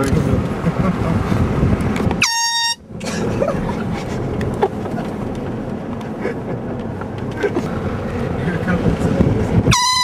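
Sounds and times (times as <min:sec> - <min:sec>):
vehicle noise: 0:00.0 - 0:10.0
wind noise: 0:00.0 - 0:10.0
air horn blast: 0:02.2 - 0:02.9, 0:09.7 - 0:10.0.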